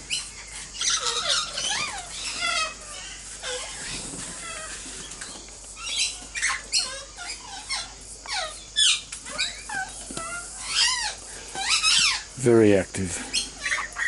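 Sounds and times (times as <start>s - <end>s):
parrots chirping: 0.0s - 12.6s, 13.2s - 14.0s.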